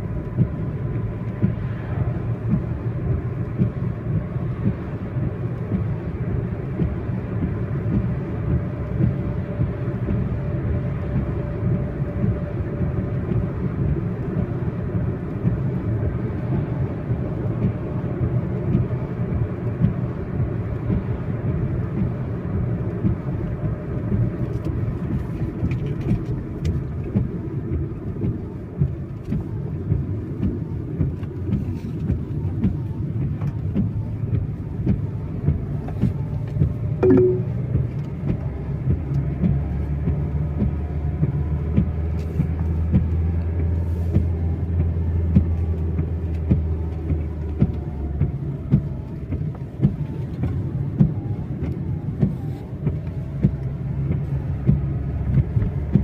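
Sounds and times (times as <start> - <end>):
engine and road rumble: 0.0 - 56.0
rain taps: 0.0 - 56.0
short higher tone: 37.0 - 37.6.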